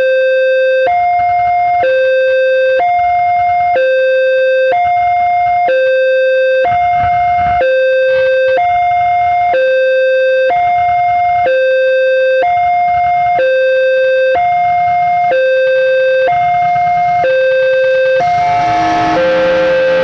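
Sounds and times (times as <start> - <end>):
two-tone crossing alarm: 0.2 - 20.0
faint rumble: 15.9 - 20.0.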